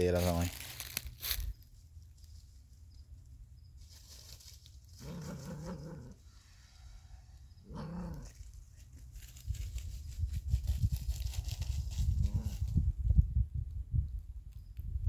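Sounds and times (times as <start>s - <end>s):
low drawn-out animal calls: 5.0s - 8.5s.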